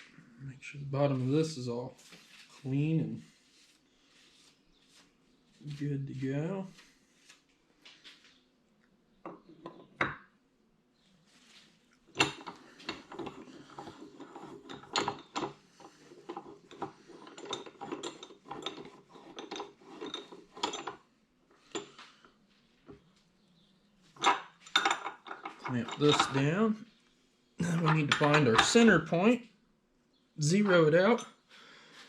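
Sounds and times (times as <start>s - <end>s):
metal tools clinking and rattling: 12.1s - 22.0s, 24.2s - 26.7s, 27.6s - 29.0s.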